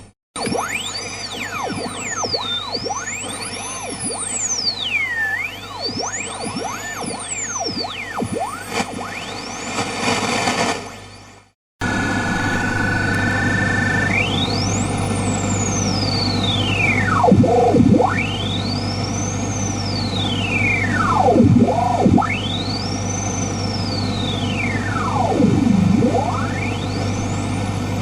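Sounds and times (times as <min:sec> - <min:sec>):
whistle sweeping up and down: 0:00.6 - 0:09.7
radio static hiss: 0:00.7 - 0:28.0
low hum: 0:11.8 - 0:28.0
steady tones: 0:11.8 - 0:28.0.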